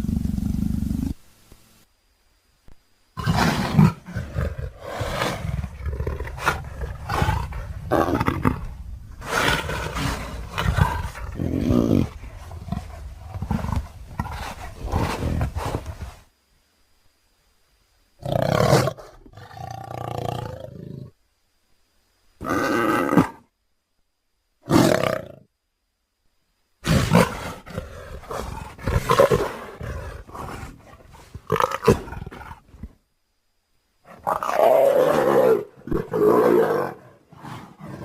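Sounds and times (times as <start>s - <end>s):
big cat roaring and growling: 34.1s - 38.0s.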